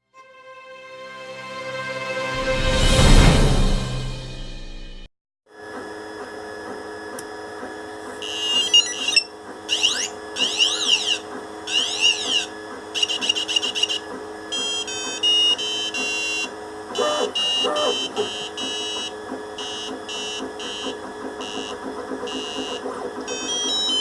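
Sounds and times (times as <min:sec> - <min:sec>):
electronic buzzer sound effects: 0:08.2 - 0:24.0.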